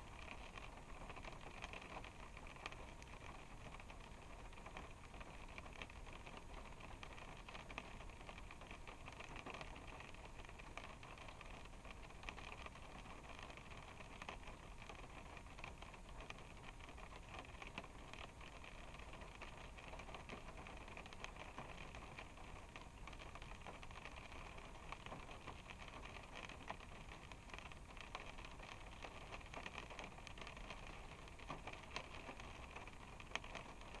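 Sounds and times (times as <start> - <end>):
rain pattering on car roof: 0.0 - 34.0.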